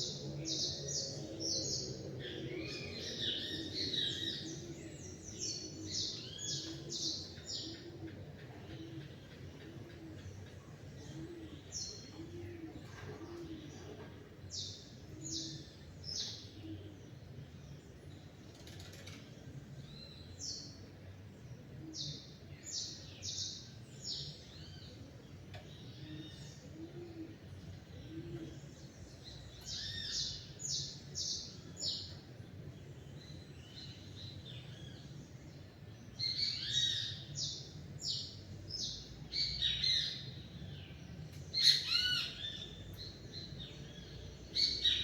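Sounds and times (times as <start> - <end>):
dove cooing softly: 0.0 - 17.4, 20.9 - 33.1
small songbirds chirping: 0.0 - 45.0.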